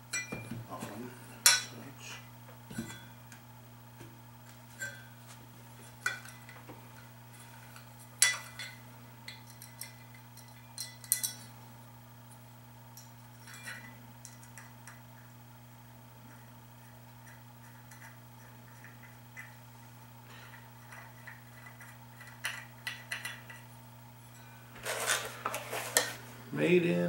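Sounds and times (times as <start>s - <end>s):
metal parts clinking and knocking: 8.2s - 11.5s.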